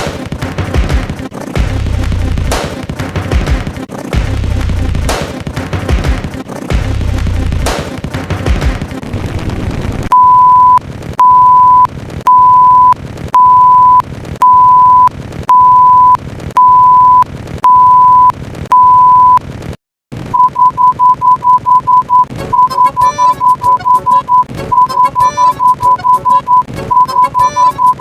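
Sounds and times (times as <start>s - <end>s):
noisy rumble: 0.0s - 22.7s
electronic beep tone: 10.1s - 19.4s, 20.3s - 28.0s.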